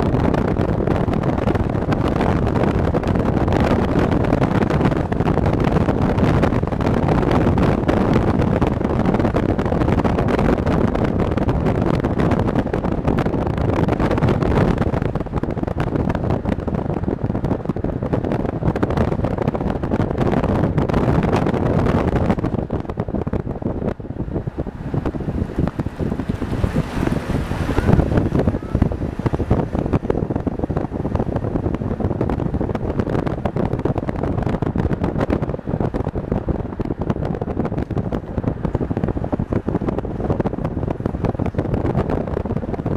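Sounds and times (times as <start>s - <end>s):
car road and engine noise: 0.0s - 42.9s
wind rumbling on microphone: 0.0s - 42.9s.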